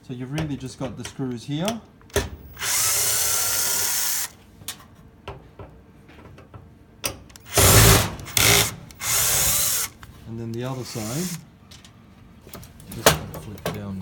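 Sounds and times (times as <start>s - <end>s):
power drill whirring: 2.4s - 4.4s, 7.4s - 11.5s.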